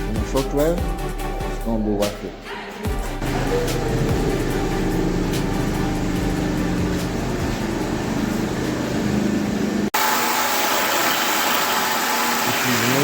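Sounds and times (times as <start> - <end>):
machinery hum: 3.0 - 10.2.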